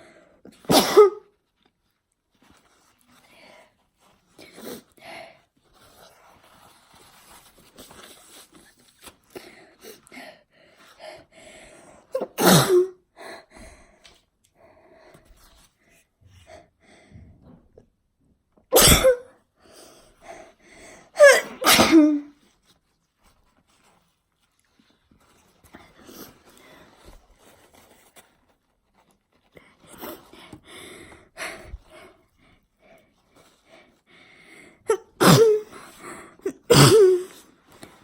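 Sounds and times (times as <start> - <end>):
woman sneezing: 0.7 - 1.3, 12.2 - 13.0, 18.7 - 19.3, 21.2 - 22.3, 34.9 - 35.7, 36.4 - 37.4.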